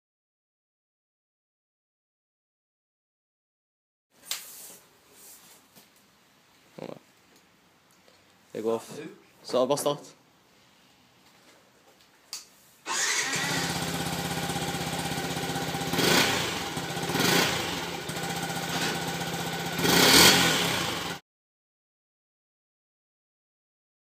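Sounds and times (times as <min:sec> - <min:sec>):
motorcycle engine starting and idling: 0:12.8 - 0:21.2.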